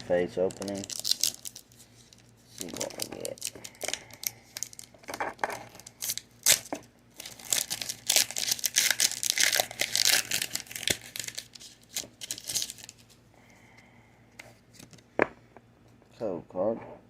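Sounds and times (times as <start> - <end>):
foil wrapper tearing and crinkling: 0.1 - 13.1.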